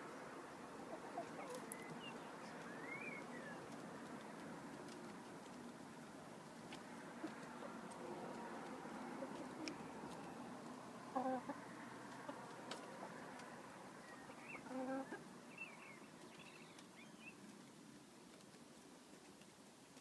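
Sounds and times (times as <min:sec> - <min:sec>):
chickens clucking: 0:00.8 - 0:15.4.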